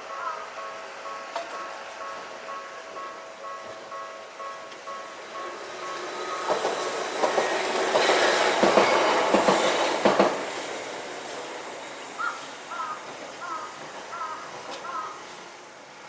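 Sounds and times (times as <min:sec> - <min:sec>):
crossing alarm pulsing bell: 0:00.0 - 0:09.8
tram wheels clicking over rail joints: 0:00.0 - 0:15.9.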